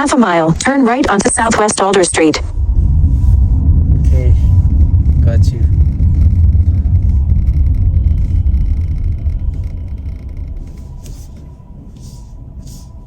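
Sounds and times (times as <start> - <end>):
road rumble: 1.2 - 13.0
car engine inside cabin: 1.6 - 11.7.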